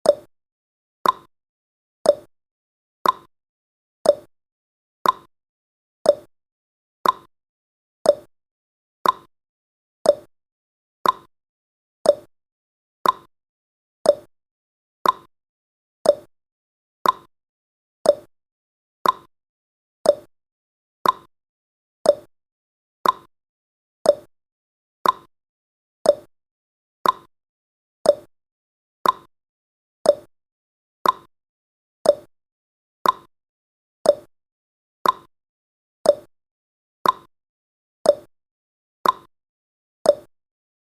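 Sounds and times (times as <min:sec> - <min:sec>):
clock ticking: 0:03.0 - 0:03.3, 0:05.0 - 0:05.3, 0:07.0 - 0:07.3, 0:09.0 - 0:09.3, 0:11.0 - 0:11.3, 0:13.0 - 0:13.3, 0:15.0 - 0:15.3, 0:16.1 - 0:16.3, 0:17.0 - 0:17.3, 0:18.1 - 0:18.3, 0:19.0 - 0:19.3, 0:20.1 - 0:20.3, 0:21.0 - 0:21.3, 0:22.1 - 0:22.3, 0:23.0 - 0:23.3, 0:24.1 - 0:24.3, 0:25.0 - 0:25.3, 0:26.1 - 0:26.3, 0:27.0 - 0:27.3, 0:29.0 - 0:29.3, 0:30.1 - 0:30.3, 0:31.0 - 0:31.3, 0:32.1 - 0:32.3, 0:33.0 - 0:33.3, 0:34.1 - 0:34.3, 0:35.0 - 0:35.3, 0:36.1 - 0:36.3, 0:37.0 - 0:37.3, 0:38.1 - 0:38.3, 0:39.0 - 0:39.3, 0:40.1 - 0:40.3.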